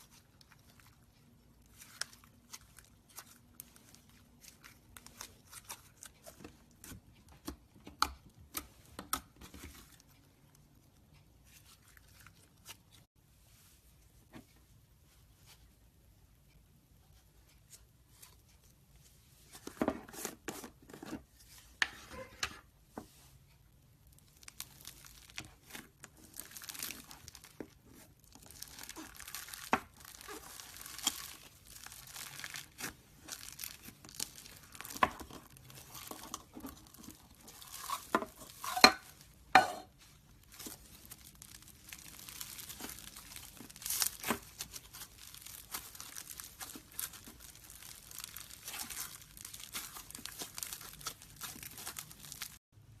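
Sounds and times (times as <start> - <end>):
slime crackling and popping: 24.1 - 39.3, 40.4 - 52.6.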